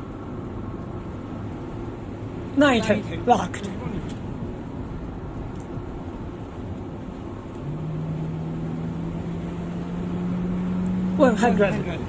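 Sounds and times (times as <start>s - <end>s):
car road noise: 0.0s - 12.0s
low engine hum rising in pitch: 3.8s - 12.0s.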